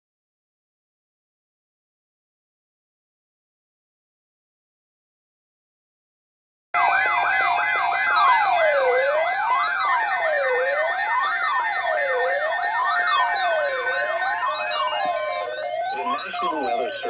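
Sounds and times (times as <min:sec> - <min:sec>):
electronic warning siren: 0:06.8 - 0:17.0.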